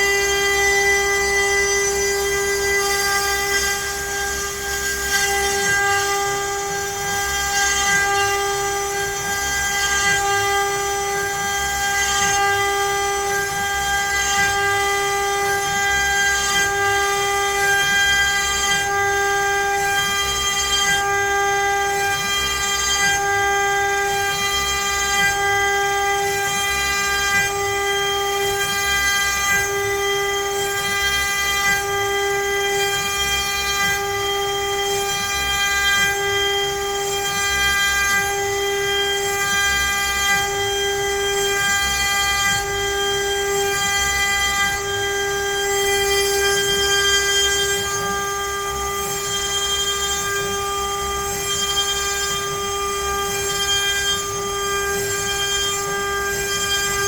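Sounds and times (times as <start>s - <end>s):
cnc router spindle whine: 0.0s - 57.0s.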